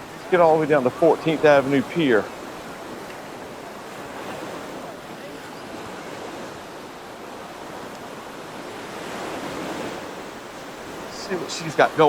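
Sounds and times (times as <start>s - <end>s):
ocean surf rushing: 0.0s - 12.0s.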